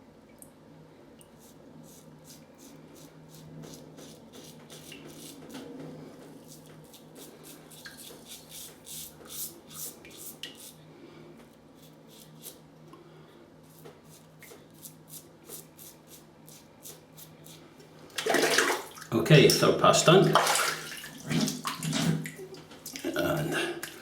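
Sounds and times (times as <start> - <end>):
razor scraping stubble: 1.4 - 10.8, 11.7 - 12.6, 13.6 - 17.6.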